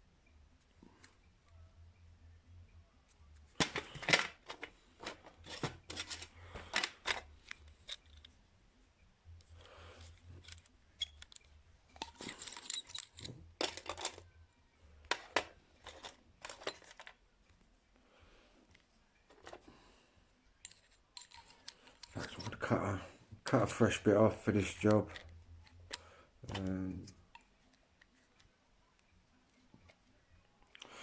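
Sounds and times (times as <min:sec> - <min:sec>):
faint low hum: 0:00.0 - 0:31.0
small tools clicking and rattling: 0:03.6 - 0:08.4, 0:09.9 - 0:14.3, 0:15.0 - 0:17.2, 0:20.6 - 0:22.7.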